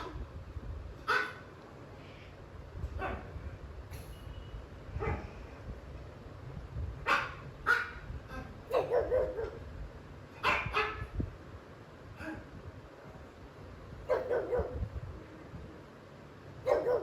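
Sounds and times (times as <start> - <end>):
dog barking: 1.1 - 1.5, 3.0 - 3.4, 5.0 - 5.3, 7.0 - 8.1, 8.7 - 9.7, 10.4 - 11.2, 14.0 - 14.9, 16.6 - 17.0.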